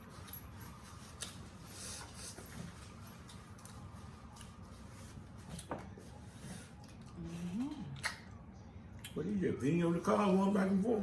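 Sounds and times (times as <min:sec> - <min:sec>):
wet chewing clicks and smacks: 0:08.0 - 0:08.4.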